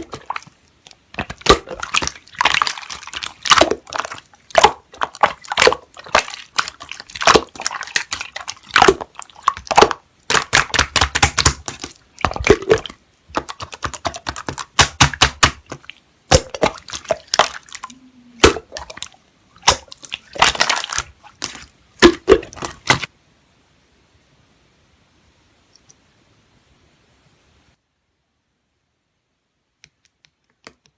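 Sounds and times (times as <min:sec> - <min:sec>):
slime squished by hand: 0:00.0 - 0:23.1.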